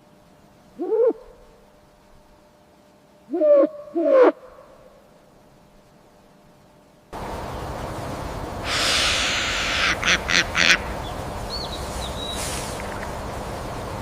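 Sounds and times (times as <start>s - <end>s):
background hiss: 0.0s - 14.0s
animal calling: 3.3s - 5.0s, 8.6s - 12.4s
rushing noise: 7.2s - 14.0s
faint bird chirp: 8.7s - 13.0s.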